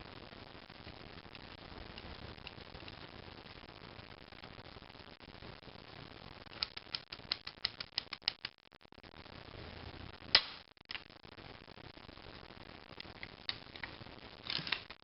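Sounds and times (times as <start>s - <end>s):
sharp loud snap: 10.4s - 10.6s.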